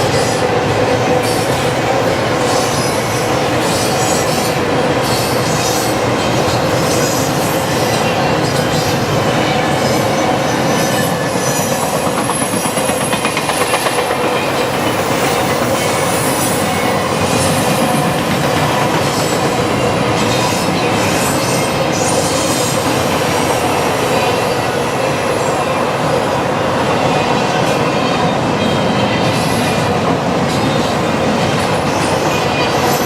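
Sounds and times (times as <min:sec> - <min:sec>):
steel wheels clattering over rail: 0:00.0 - 0:26.3.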